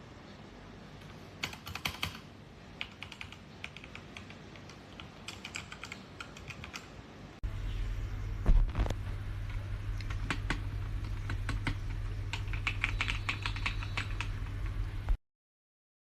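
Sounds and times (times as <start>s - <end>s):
steady low hum: 0.0s - 15.2s
mechanical keyboard keystrokes: 1.4s - 6.9s, 10.0s - 14.8s.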